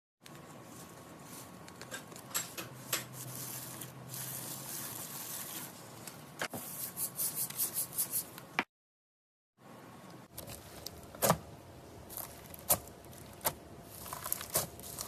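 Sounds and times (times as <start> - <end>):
slime squishing: 12.1 - 15.0.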